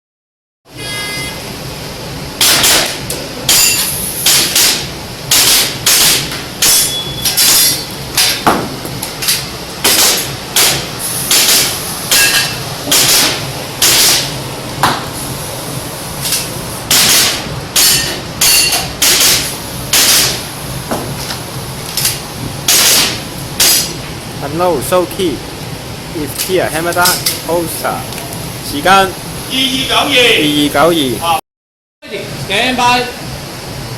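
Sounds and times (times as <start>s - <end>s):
airsoft pistol shots: 2.4s - 3.7s, 4.3s - 6.9s, 9.8s - 12.3s, 12.9s - 15.1s, 16.9s - 18.0s, 19.0s - 20.4s, 22.7s - 23.8s.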